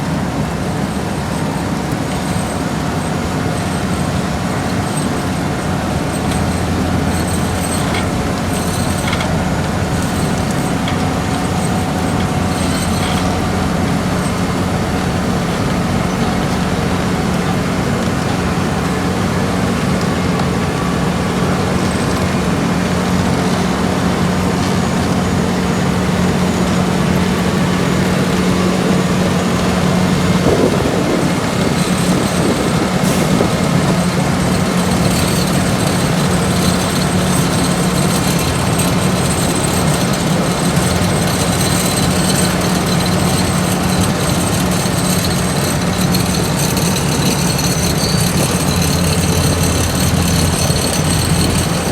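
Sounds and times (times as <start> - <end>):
diesel construction machinery running: 0.0 - 51.9.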